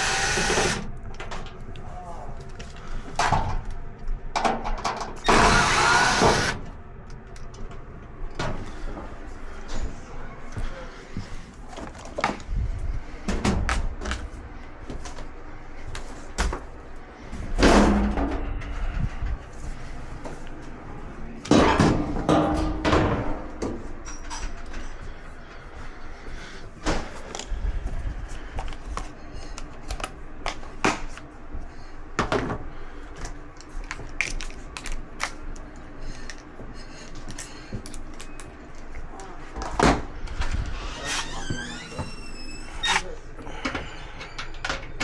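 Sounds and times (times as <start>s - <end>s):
dryer parts knocking and clunking: 2.4s - 6.8s, 13.2s - 15.3s, 15.9s - 20.5s, 21.4s - 25.1s
high squeak: 40.9s - 43.2s.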